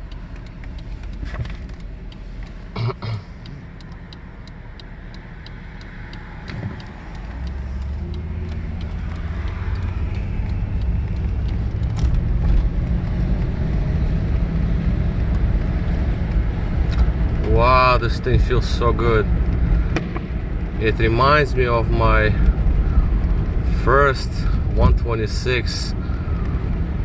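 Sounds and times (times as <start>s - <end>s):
car engine and road noise: 0.0s - 27.0s
light ticking: 0.0s - 27.0s.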